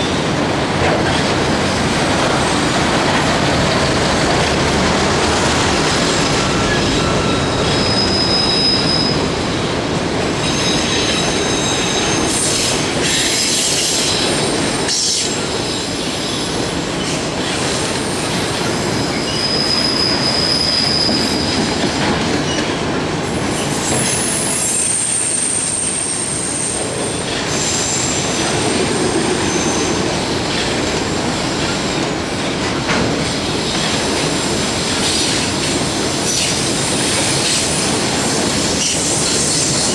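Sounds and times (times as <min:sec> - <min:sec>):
freight train rolling past: 0:00.0 - 0:39.9
high-pitched wheel squeal: 0:06.1 - 0:09.3.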